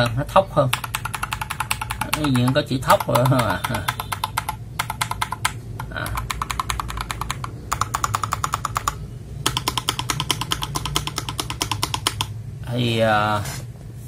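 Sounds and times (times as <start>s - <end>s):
mechanical keyboard typing: 0.0s - 12.3s.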